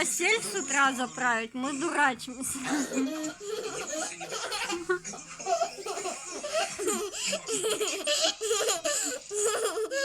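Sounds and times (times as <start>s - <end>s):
children laughing: 2.6s - 10.0s.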